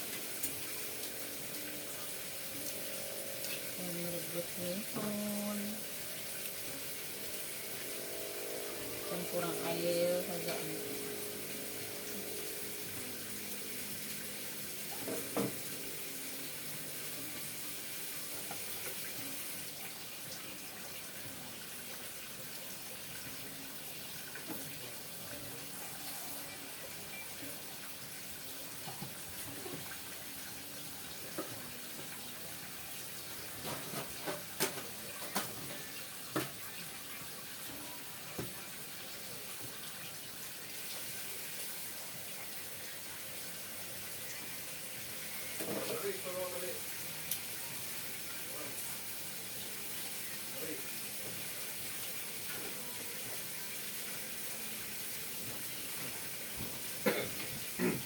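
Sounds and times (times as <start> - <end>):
water boiling in a pot: 0.0 - 58.0.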